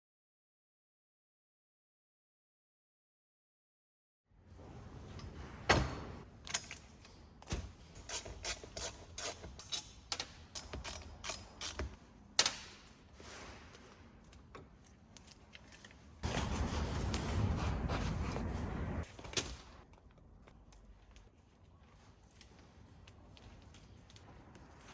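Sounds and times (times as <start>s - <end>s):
metal parts clicking and knocking: 6.4s - 13.0s, 14.2s - 16.1s.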